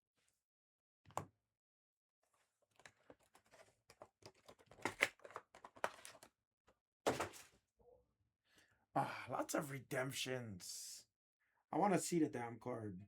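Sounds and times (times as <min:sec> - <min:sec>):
cards clicking and rustling: 0:02.8 - 0:06.3.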